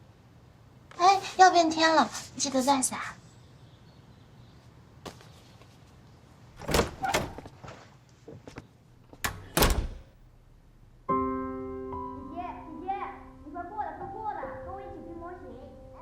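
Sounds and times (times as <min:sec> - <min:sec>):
door knocks and thuds: 0:06.6 - 0:07.5, 0:09.2 - 0:10.1
door latch click: 0:09.2 - 0:10.1.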